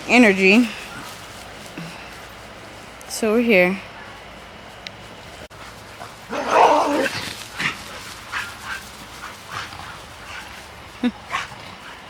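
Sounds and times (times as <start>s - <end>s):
dogs whining and yipping: 6.3s - 12.0s.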